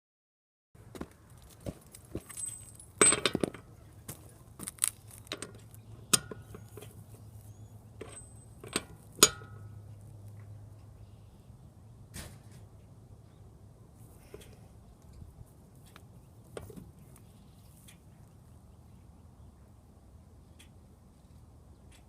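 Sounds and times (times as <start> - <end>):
metal tools clinking: 1.9 - 3.8, 8.0 - 9.7.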